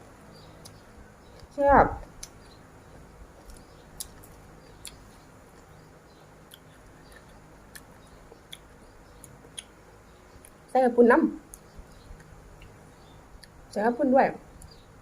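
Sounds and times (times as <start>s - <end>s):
chewing crisp food: 0.6s - 5.8s, 6.4s - 10.6s.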